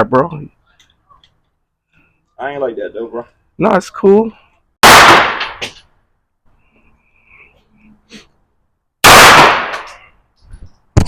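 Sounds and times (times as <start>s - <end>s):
echoing gunshots: 4.8s - 5.7s, 9.0s - 10.0s.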